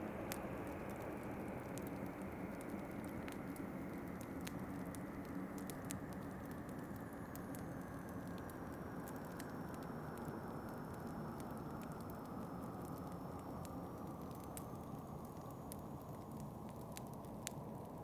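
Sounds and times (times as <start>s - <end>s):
wood fire crackling: 0.2s - 18.0s.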